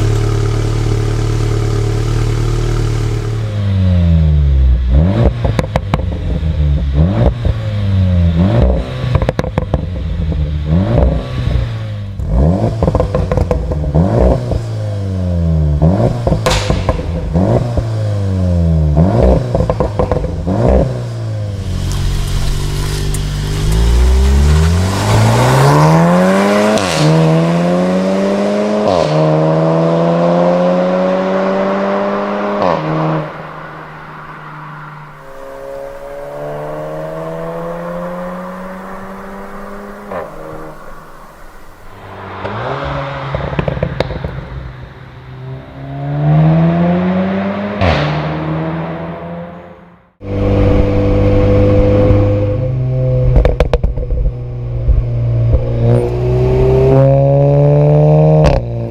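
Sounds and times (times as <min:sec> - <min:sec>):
car engine revving: 0:00.0 - 0:58.9
exhaust pops and crackles: 0:09.1 - 0:10.0, 0:12.2 - 0:14.1, 0:16.0 - 0:18.0, 0:19.2 - 0:20.8, 0:43.3 - 0:44.8, 0:53.2 - 0:56.0.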